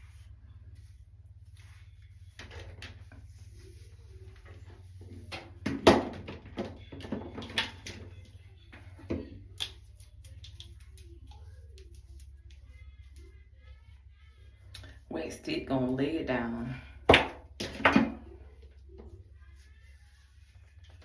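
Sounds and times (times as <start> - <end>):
objects knocking and clattering: 5.0 - 9.4, 17.1 - 19.0.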